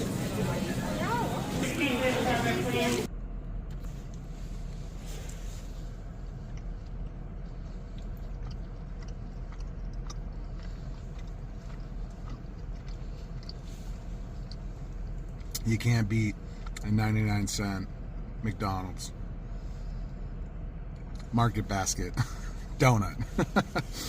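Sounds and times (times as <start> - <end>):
steady low rumble: 0.0 - 24.0
person chewing: 5.3 - 15.7, 16.4 - 17.0.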